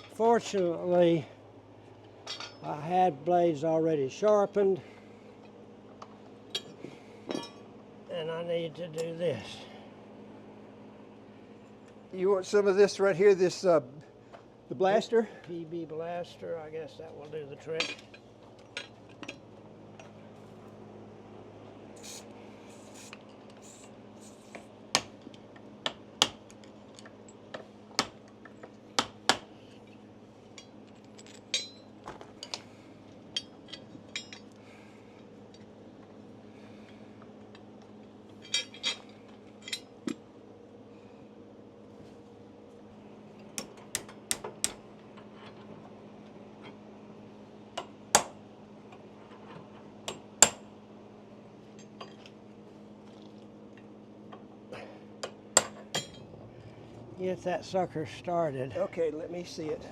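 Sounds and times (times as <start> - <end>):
steady low hum: 0.0 - 59.9
metal tools clinking: 2.2 - 2.7, 30.5 - 32.6, 33.3 - 34.6, 38.4 - 40.0.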